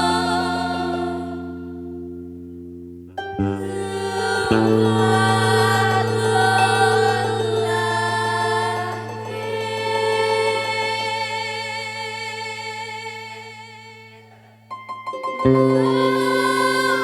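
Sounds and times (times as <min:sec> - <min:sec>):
held melody notes with vibrato: 0:00.0 - 0:11.7
low drone: 0:03.6 - 0:12.7.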